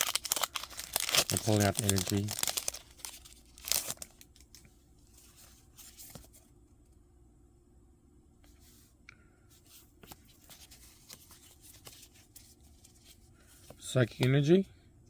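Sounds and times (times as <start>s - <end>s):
trading cards rustling: 0.0s - 6.4s, 9.8s - 14.5s.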